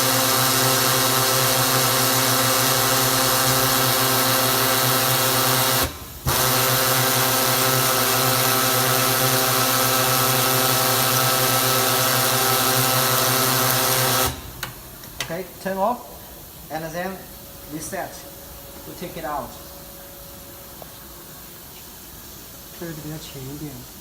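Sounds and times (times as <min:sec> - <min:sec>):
sanding machine humming and hissing: 0:00.0 - 0:14.3.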